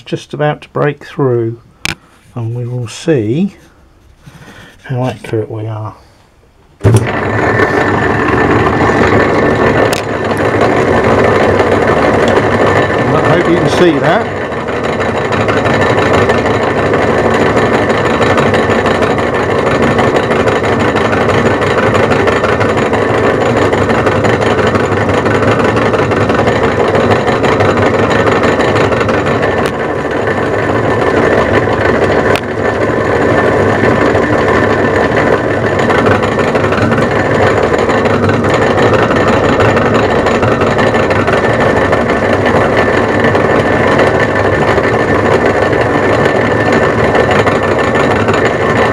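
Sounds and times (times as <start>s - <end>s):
lathe running: 0.0s - 48.9s
drill boring through metal: 6.8s - 48.9s.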